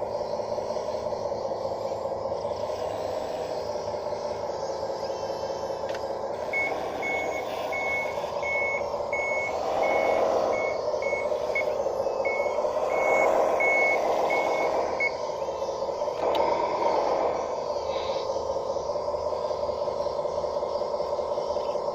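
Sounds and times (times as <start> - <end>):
model bulldozer drive droning: 0.0 - 21.9
reversing beeper short high beeps: 6.5 - 15.2.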